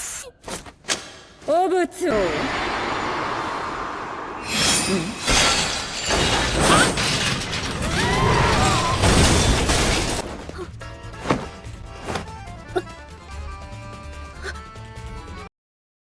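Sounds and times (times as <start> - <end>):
crashing and mechanical clattering: 4.4 - 12.4.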